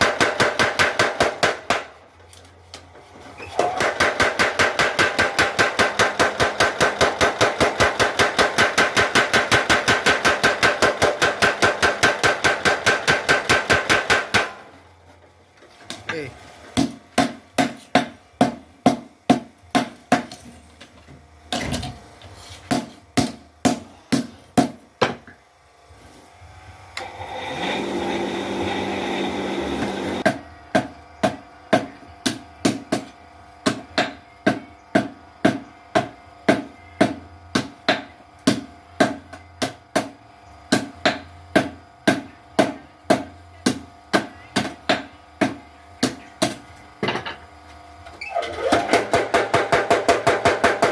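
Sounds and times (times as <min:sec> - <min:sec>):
power hammer striking: 0:00.0 - 0:01.9, 0:03.6 - 0:14.6, 0:48.6 - 0:50.9
steady hum: 0:00.0 - 0:50.9.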